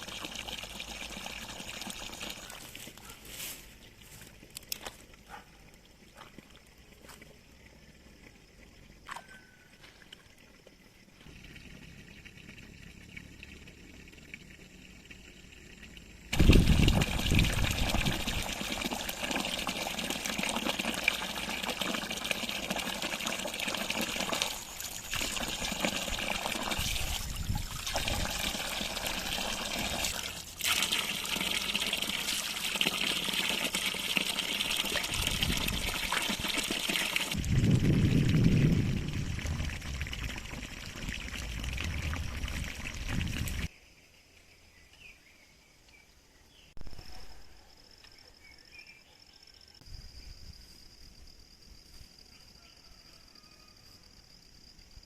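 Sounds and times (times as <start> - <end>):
water running and trickling: 0.0 - 3.0, 9.8 - 43.7.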